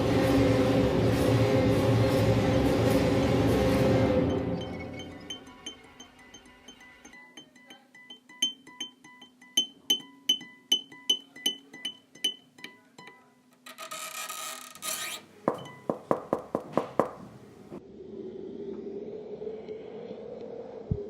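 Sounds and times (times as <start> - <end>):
ringing plucked notes: 4.3 - 13.3.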